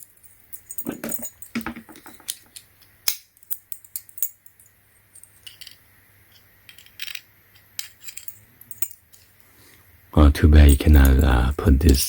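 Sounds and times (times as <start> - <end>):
light metal clinks: 0.0 - 2.7, 3.4 - 5.8, 7.8 - 9.2, 10.6 - 12.0
metal bits clicking: 0.0 - 4.6, 5.2 - 9.3, 10.6 - 12.0.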